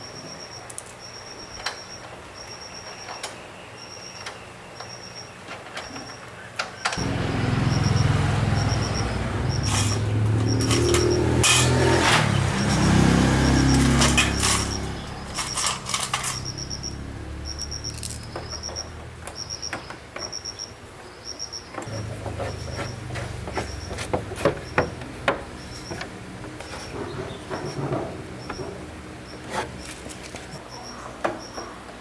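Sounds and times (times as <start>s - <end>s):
motorbike engine revving: 7.0s - 19.7s, 21.8s - 30.6s.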